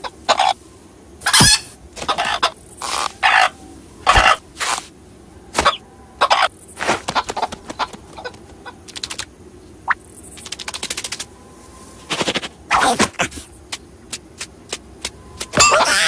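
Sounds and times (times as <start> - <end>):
rattle of clicks: 8.8 - 9.3, 10.3 - 11.3.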